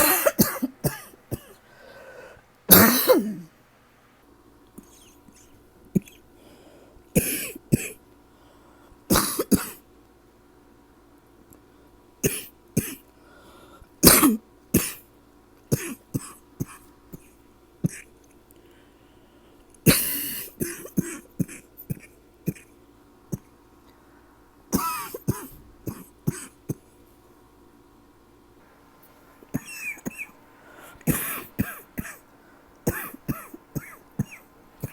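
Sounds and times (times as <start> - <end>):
person coughing: 0.0 - 3.5, 7.2 - 8.0, 9.1 - 9.8, 12.2 - 13.0, 14.0 - 15.0, 15.7 - 18.1, 19.9 - 23.5, 24.7 - 26.9, 29.4 - 34.9.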